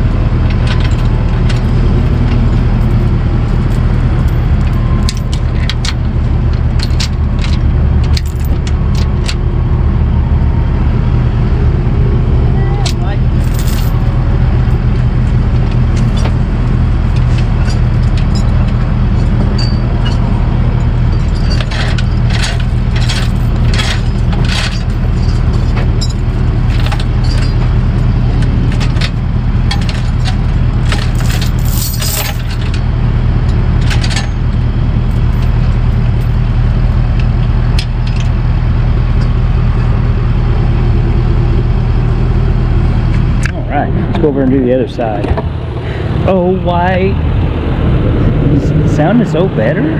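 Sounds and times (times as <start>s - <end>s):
truck engine drone: 0.0s - 49.9s
metallic clicks and jingles: 12.8s - 14.1s, 17.1s - 32.8s.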